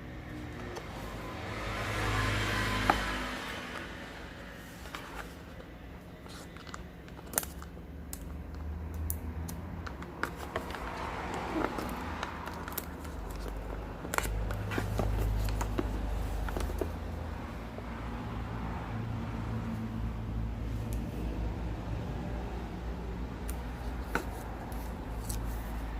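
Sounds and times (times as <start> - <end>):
soft rustling and scraping: 4.6 - 7.6.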